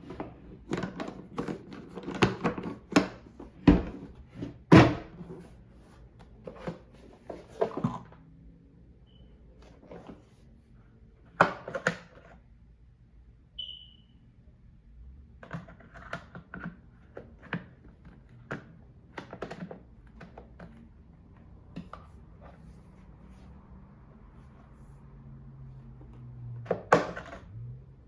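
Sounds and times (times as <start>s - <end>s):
box and plastic handling: 0.0s - 8.2s, 15.4s - 23.6s.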